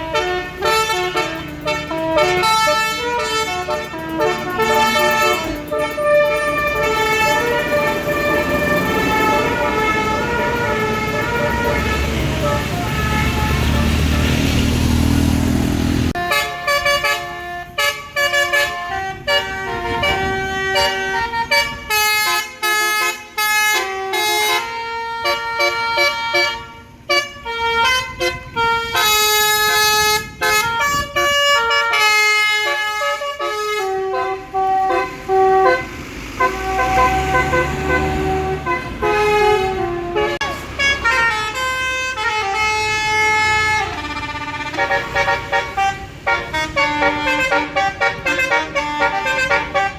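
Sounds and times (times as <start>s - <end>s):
musical bus horn playing a tune: 0.0s - 14.8s, 15.4s - 49.9s
heavy vehicle engine running: 0.0s - 22.6s, 32.8s - 49.9s.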